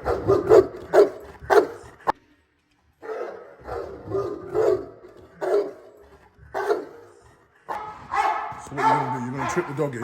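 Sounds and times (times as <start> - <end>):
dog barking: 0.0 - 1.8, 3.0 - 6.0, 6.6 - 10.0.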